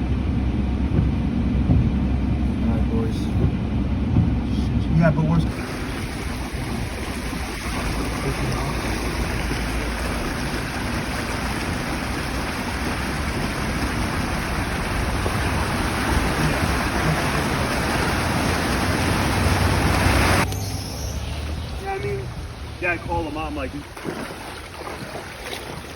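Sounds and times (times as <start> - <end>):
low rumble: 0.0 - 24.0
floodwater rushing: 5.2 - 25.9.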